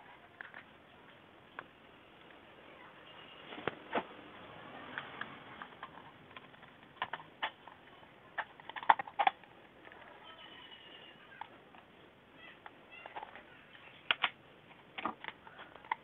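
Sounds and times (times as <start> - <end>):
plastic parts clicking: 4.9 - 10.1, 12.5 - 16.0.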